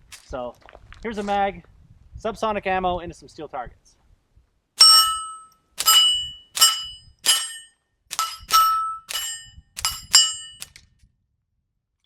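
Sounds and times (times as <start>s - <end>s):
steel targets clanging: 4.8s - 10.7s.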